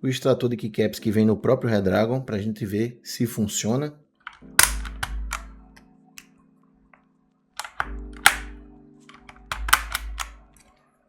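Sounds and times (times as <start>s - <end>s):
keycaps snapping off: 4.3s - 5.8s, 7.6s - 10.6s.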